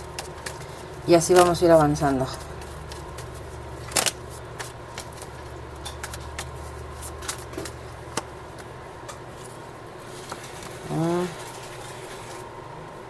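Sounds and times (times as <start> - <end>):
cards clicking and tapping: 0.0 - 9.2
low background hum: 0.0 - 13.0.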